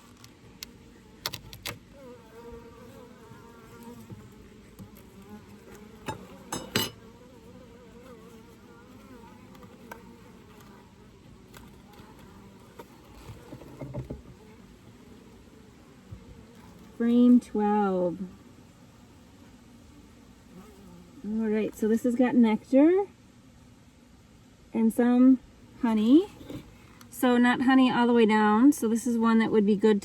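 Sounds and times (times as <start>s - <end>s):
honeybees buzzing: 0.0s - 22.7s.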